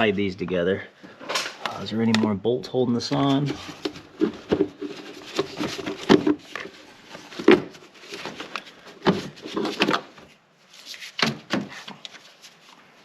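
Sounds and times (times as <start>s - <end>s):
scraping and rattling: 3.2s - 10.2s.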